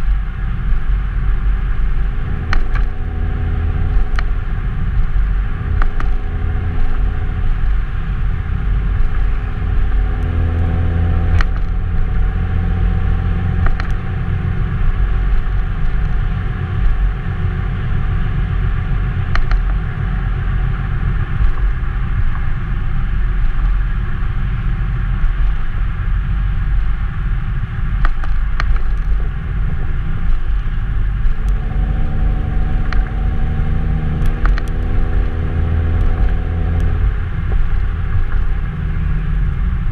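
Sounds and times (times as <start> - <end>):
car exhaust drone: 0.0 - 39.9.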